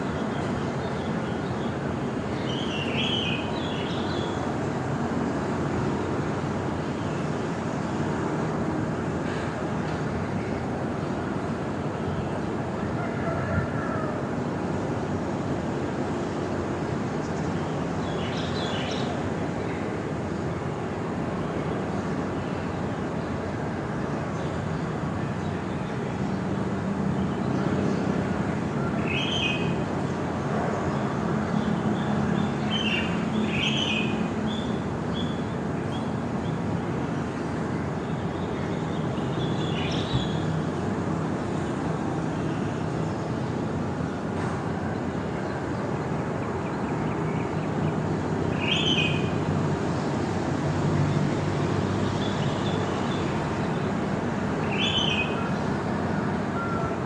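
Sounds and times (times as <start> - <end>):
birds chirping: 0.0 - 5.4, 28.8 - 40.9, 44.8 - 49.5, 52.1 - 57.0.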